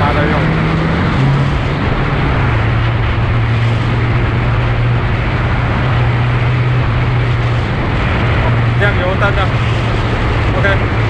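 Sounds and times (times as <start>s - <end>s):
constant rushing noise: 0.0s - 11.0s.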